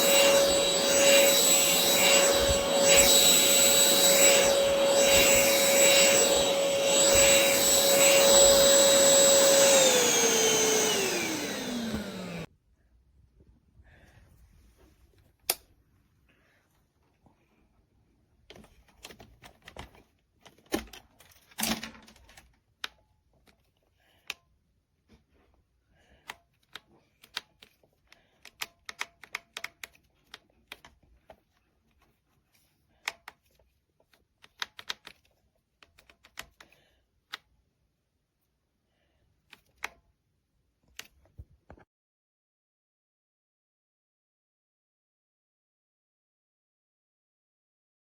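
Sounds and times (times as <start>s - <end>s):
plastic parts clicking: 26.2s - 31.0s, 33.0s - 37.4s.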